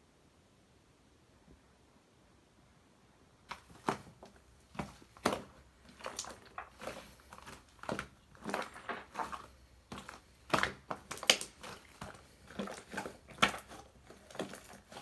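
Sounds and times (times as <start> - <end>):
slime squishing and popping: 4.9 - 13.7.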